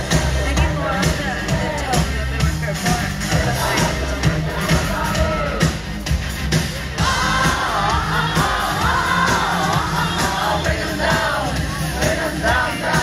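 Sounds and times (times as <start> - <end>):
amplified pop music: 0.0 - 13.0
lead singing voice: 3.2 - 5.8, 6.9 - 13.0.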